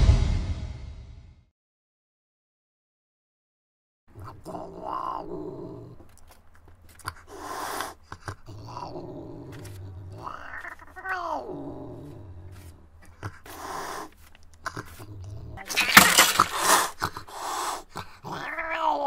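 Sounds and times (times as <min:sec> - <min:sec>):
cat growling: 0:04.1 - 0:19.0
cat hissing: 0:07.0 - 0:19.0
cat yowling: 0:10.1 - 0:11.6, 0:18.2 - 0:19.0.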